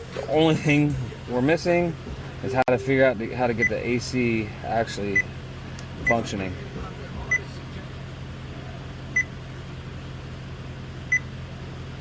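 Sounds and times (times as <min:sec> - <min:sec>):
steady low hum: 0:00.0 - 0:12.0
car warning chime beeps: 0:02.8 - 0:03.9, 0:06.0 - 0:06.2, 0:11.1 - 0:11.3.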